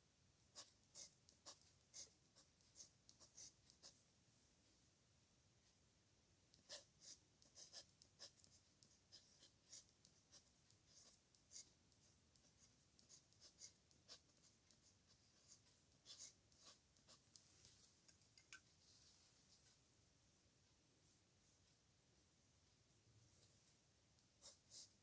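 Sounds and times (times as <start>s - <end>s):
pen scratching on paper: 0.5s - 4.0s, 6.5s - 17.4s, 24.4s - 25.0s.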